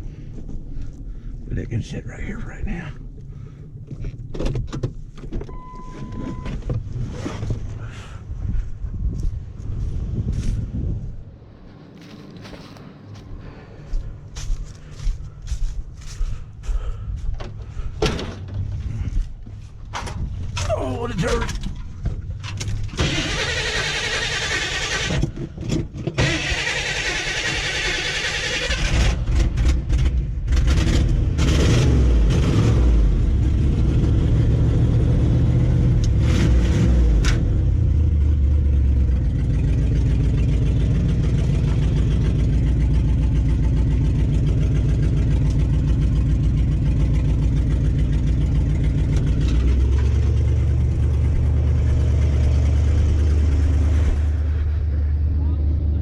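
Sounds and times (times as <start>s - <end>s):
truck engine running: 37.0s - 56.0s.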